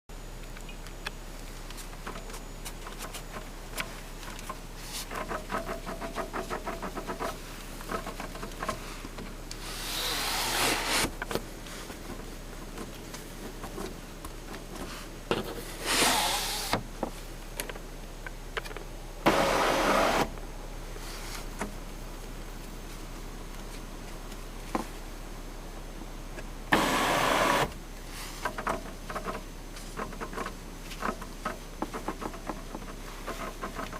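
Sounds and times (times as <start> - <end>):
rasping bursts: 9.6 - 11.1, 15.8 - 16.8
car sunroof rattling and creaking: 19.3 - 20.3.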